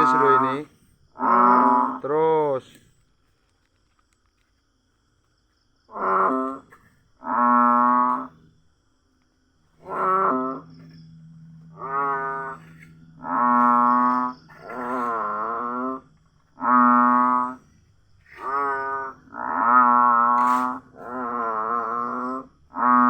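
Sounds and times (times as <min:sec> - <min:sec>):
animal calling: 0:00.0 - 0:02.6, 0:09.8 - 0:23.0
steady low hum: 0:09.6 - 0:23.0.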